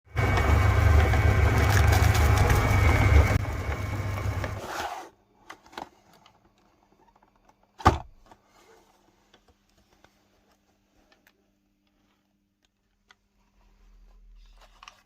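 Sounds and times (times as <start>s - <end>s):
electric meat grinder running: 0.1s - 4.7s.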